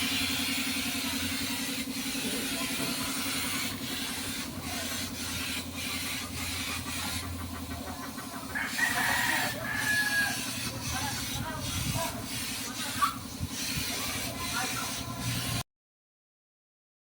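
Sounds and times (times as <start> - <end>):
motor hum: 0.0 - 15.6.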